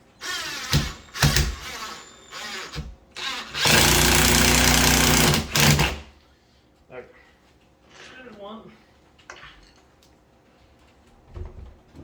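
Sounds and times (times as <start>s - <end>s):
power drill driving a screw: 0.2s - 6.1s.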